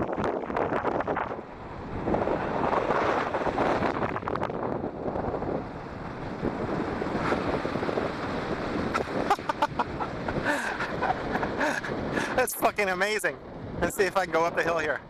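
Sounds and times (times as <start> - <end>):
wind buffeting microphone: 0.0 - 15.0
surf rushing: 5.1 - 15.0.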